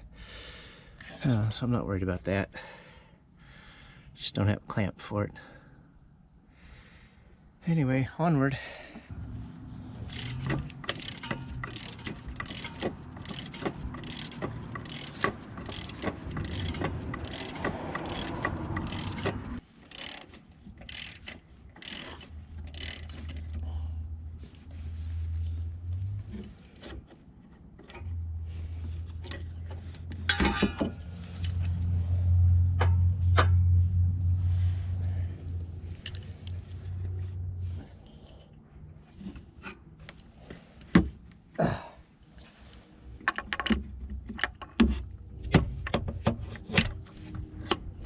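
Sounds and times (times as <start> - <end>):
socket ratchet clicking: 10.0 - 23.6.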